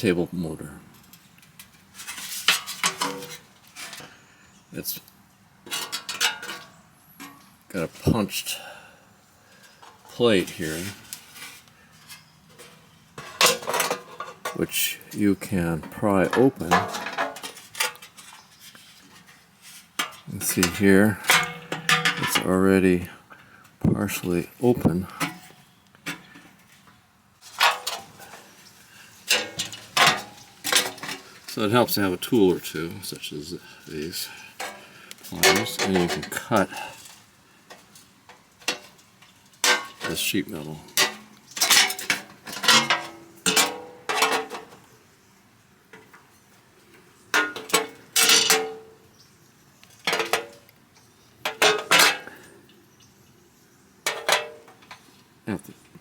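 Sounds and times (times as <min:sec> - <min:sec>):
scraping rustle: 0:00.9 - 0:04.4, 0:09.4 - 0:23.1, 0:24.6 - 0:44.9
tools and sheet metal clattering: 0:01.1 - 0:04.1, 0:05.7 - 0:07.4, 0:09.6 - 0:15.2, 0:15.8 - 0:22.5, 0:27.4 - 0:28.5, 0:29.2 - 0:32.4, 0:34.6 - 0:44.9, 0:47.3 - 0:48.9, 0:49.9 - 0:50.7, 0:51.4 - 0:52.5, 0:54.0 - 0:55.1
metallic snaps and clanks: 0:02.4 - 0:04.1, 0:05.7 - 0:07.4, 0:20.0 - 0:22.5, 0:27.5 - 0:28.4, 0:29.3 - 0:31.6, 0:37.0 - 0:40.3, 0:40.9 - 0:44.9, 0:47.4 - 0:48.9, 0:51.4 - 0:52.4.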